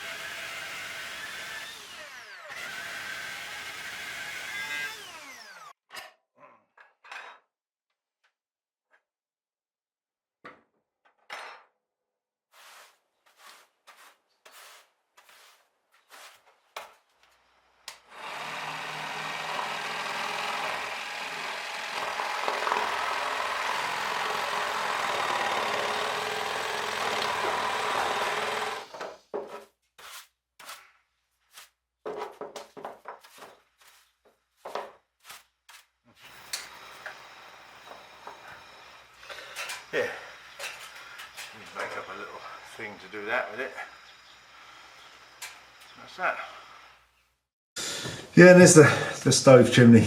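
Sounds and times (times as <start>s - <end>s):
power tool working wood: 0.0s - 5.8s, 17.9s - 29.2s, 36.2s - 47.0s.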